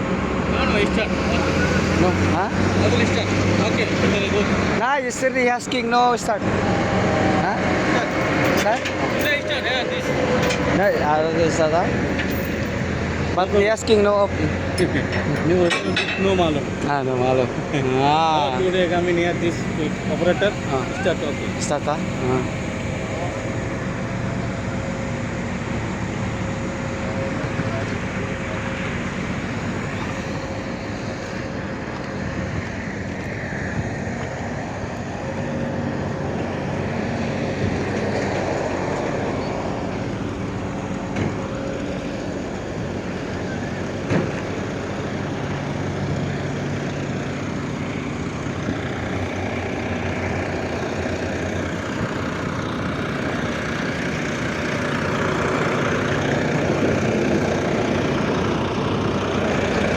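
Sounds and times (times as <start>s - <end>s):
excavator diesel engine running: 0.0s - 59.9s.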